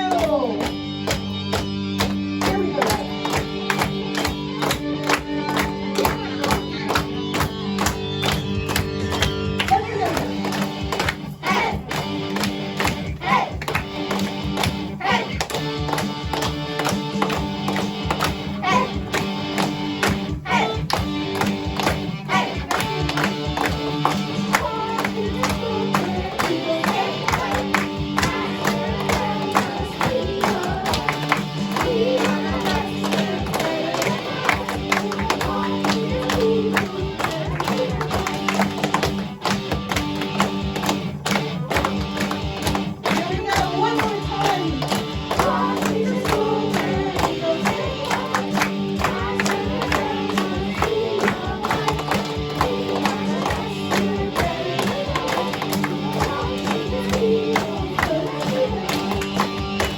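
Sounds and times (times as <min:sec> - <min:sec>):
instrumental accompaniment: 0:00.0 - 0:59.9
children singing together: 0:11.4 - 0:11.9, 0:13.1 - 0:13.7, 0:18.6 - 0:19.2, 0:20.4 - 0:20.9, 0:22.2 - 0:38.9, 0:43.1 - 0:59.9.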